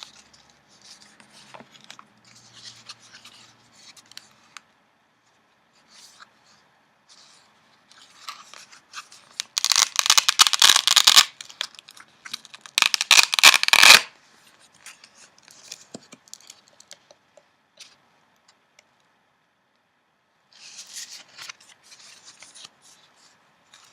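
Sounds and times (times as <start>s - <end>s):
paper pages rustling and crackling: 20.6s - 23.9s.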